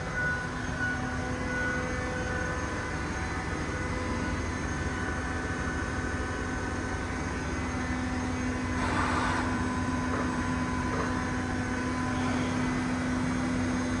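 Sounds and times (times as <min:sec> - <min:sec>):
lathe machine hum: 0:00.0 - 0:14.0.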